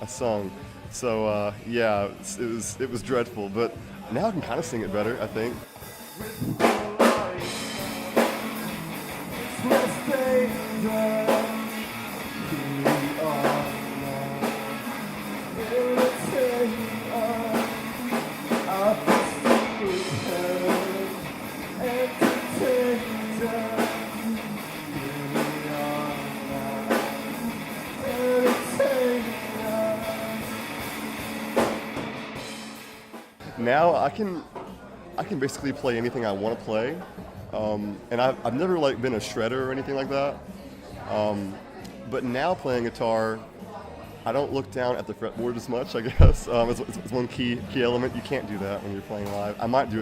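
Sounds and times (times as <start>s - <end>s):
guitar: 0.0s - 50.0s
drum kit: 4.3s - 33.4s, 46.1s - 46.8s
person singing: 6.2s - 31.2s.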